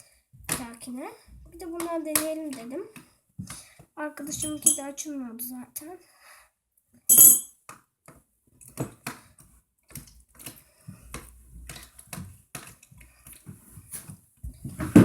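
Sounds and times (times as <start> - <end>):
spoon and container clattering: 4.3 - 4.8, 7.1 - 7.5.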